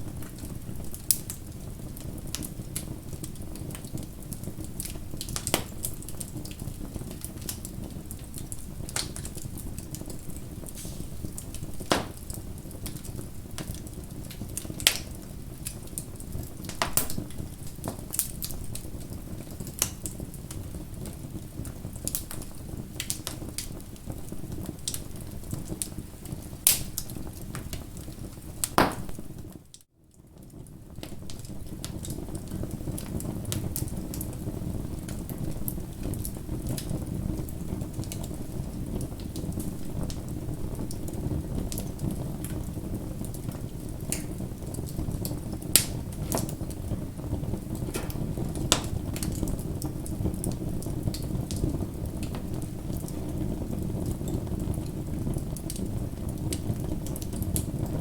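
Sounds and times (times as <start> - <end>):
bonfire flames rumbling: 0.0 - 58.0
burning wood crackling and popping: 0.0 - 58.0.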